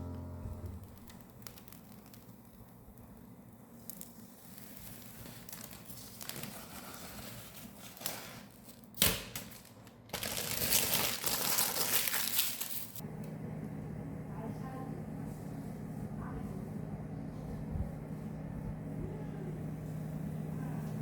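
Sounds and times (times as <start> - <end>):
plastic packaging crinkling: 0.8 - 3.2, 3.9 - 13.0.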